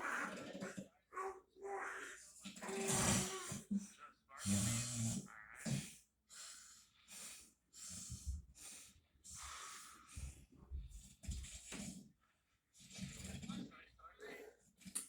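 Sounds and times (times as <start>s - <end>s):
man snoring: 2.6s - 3.7s, 4.4s - 6.0s.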